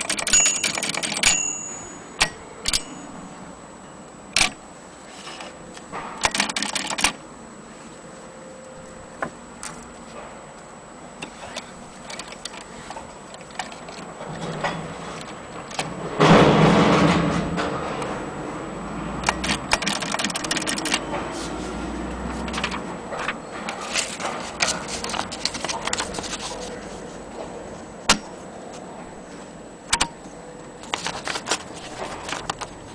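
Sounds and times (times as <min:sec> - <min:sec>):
typewriter clicking and rattling: 0:00.0 - 0:01.6, 0:02.2 - 0:03.0, 0:04.4 - 0:04.6, 0:06.2 - 0:07.2, 0:12.0 - 0:12.7, 0:19.2 - 0:21.1, 0:22.5 - 0:26.5.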